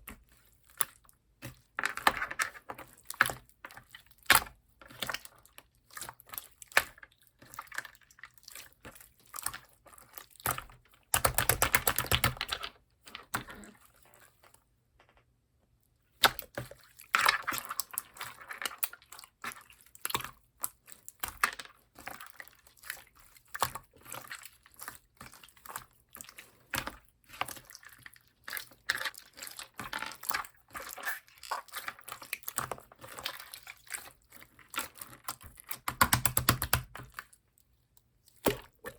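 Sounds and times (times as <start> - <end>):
loud slime squelch: 3.8 - 12.4, 13.0 - 14.5, 16.1 - 36.1.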